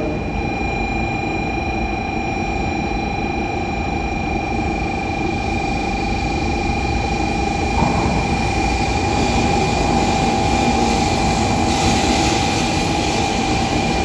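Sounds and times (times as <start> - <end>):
train rumble with high whine: 2.6 - 14.0.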